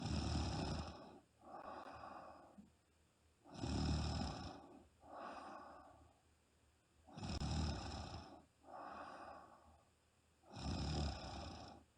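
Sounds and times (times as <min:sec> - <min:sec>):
woman snoring: 0:00.0 - 0:02.3, 0:03.5 - 0:05.7, 0:07.1 - 0:09.4, 0:10.5 - 0:11.8
soft breath out: 0:00.0 - 0:02.8, 0:04.4 - 0:06.3, 0:08.0 - 0:10.0.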